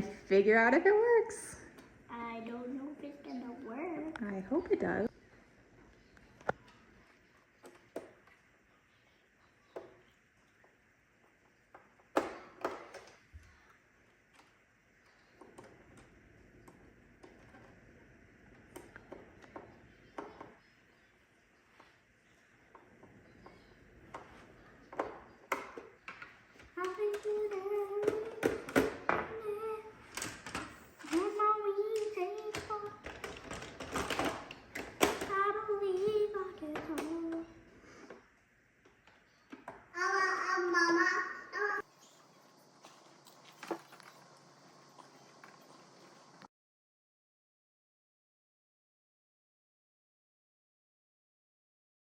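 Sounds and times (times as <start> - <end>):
plastic parts clicking and knocking: 11.7 - 13.4, 22.7 - 29.3, 30.1 - 35.5, 36.6 - 37.4
child singing: 26.8 - 30.0, 31.0 - 33.1, 35.2 - 37.5, 40.0 - 41.8
plastic parts clicking: 30.1 - 35.4.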